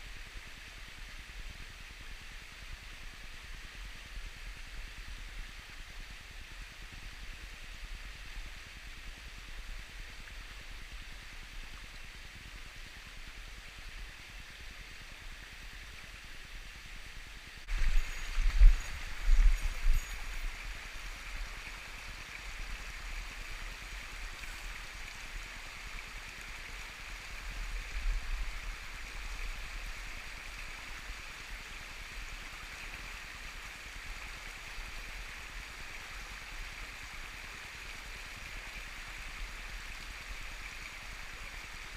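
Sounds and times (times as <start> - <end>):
stream rushing over rocks: 17.4 - 41.9.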